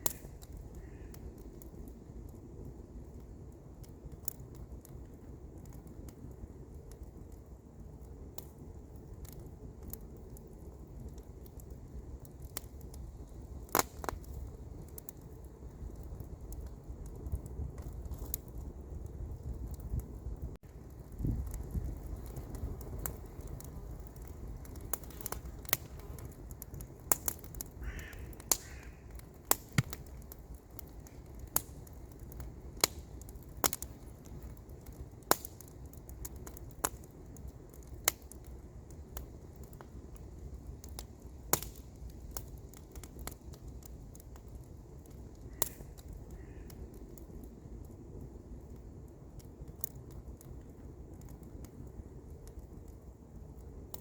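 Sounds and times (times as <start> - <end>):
campfire crackling and popping: 0.0 - 54.0
bird calling: 27.8 - 29.0.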